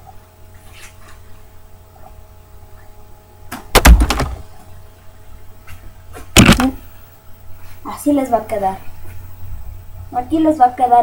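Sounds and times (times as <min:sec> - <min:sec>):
loud knocks and thump: 0:03.6 - 0:04.5, 0:06.4 - 0:06.8.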